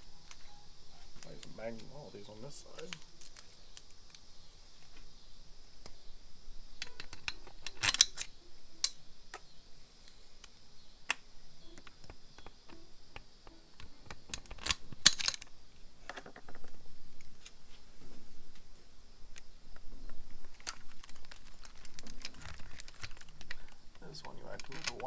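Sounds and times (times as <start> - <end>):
metal bolts and tools clinking: 6.8 - 8.3, 14.4 - 15.5.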